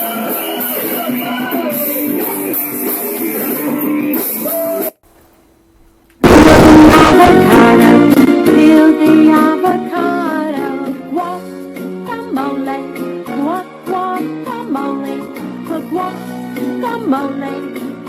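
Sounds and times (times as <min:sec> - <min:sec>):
drums: 0:00.0 - 0:05.0, 0:06.2 - 0:18.0
electric guitar: 0:00.0 - 0:05.0, 0:06.2 - 0:18.0
person singing: 0:06.2 - 0:18.0.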